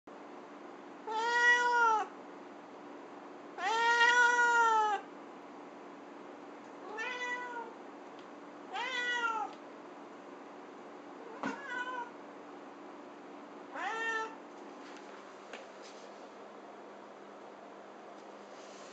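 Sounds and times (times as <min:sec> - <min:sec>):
cat meowing: 0:01.1 - 0:02.1, 0:03.6 - 0:05.1, 0:06.8 - 0:07.8, 0:08.7 - 0:09.6, 0:11.2 - 0:12.1, 0:13.7 - 0:14.4.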